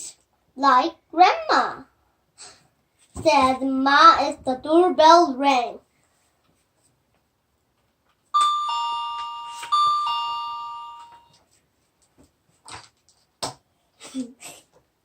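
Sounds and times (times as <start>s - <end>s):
two-note doorbell chime: 8.4s - 11.4s.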